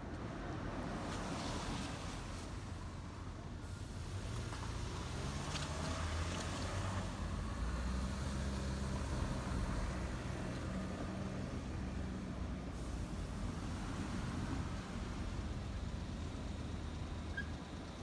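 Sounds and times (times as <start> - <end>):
street traffic noise: 0.0 - 18.0.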